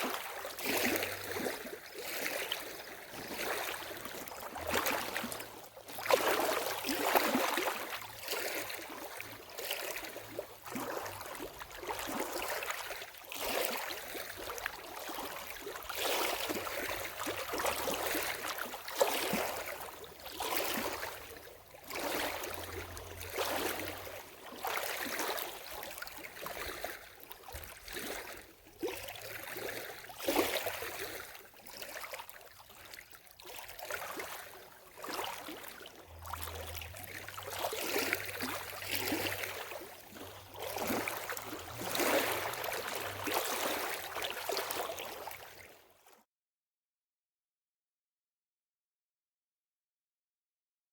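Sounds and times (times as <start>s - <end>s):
water lapping at shore: 0.0s - 46.2s.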